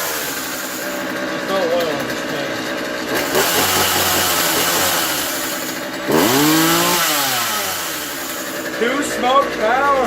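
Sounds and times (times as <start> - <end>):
chainsaw engine running: 0.0 - 10.0.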